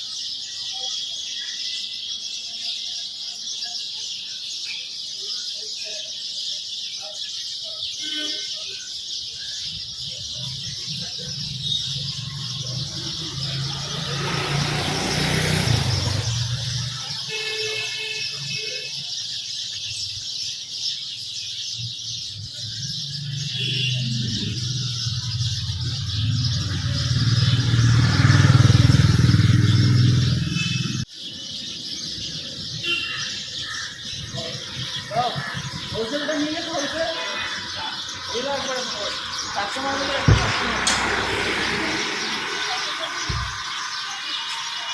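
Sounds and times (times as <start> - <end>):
sparrows chirping: 0.0 - 44.9
vehicles passing on road: 9.6 - 19.8, 21.8 - 44.9.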